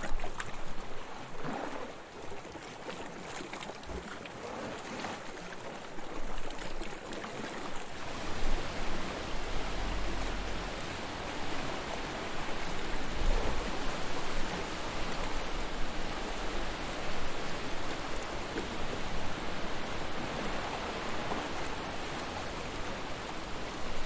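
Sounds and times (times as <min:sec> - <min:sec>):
sea waves washing onto shore: 0:07.9 - 0:24.0
low rumble: 0:08.0 - 0:15.5.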